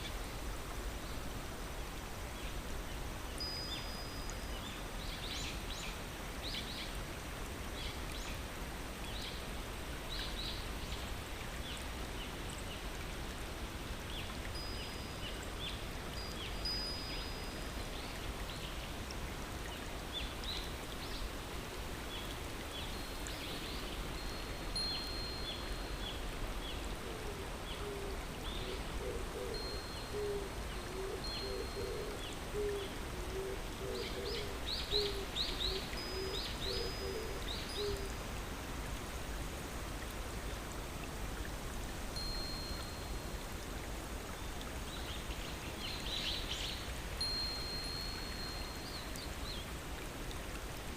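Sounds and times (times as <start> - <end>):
flowing stream: 0.0 - 50.9
bird cooing: 27.0 - 38.1.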